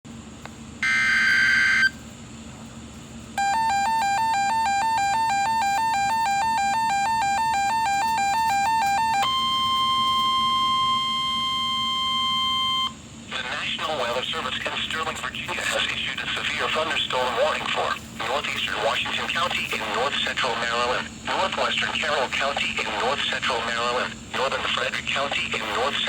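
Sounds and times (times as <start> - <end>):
digital data screech: 0.8 - 1.9
two-tone attention signal warbling: 0.8 - 1.9, 3.4 - 13.0
steady warning alarm tone: 0.8 - 2.0, 3.4 - 13.1.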